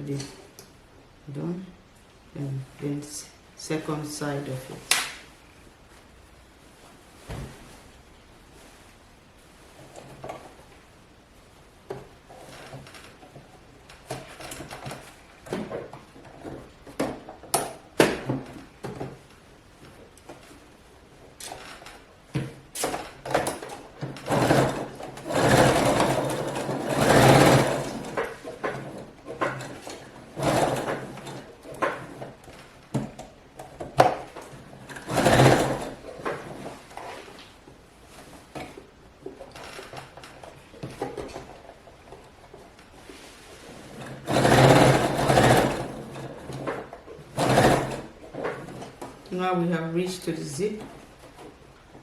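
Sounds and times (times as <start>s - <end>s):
sewing machine clicks: 22.8s - 37.1s, 44.0s - 49.2s
sewing machine stitching: 22.8s - 37.2s, 43.1s - 49.3s.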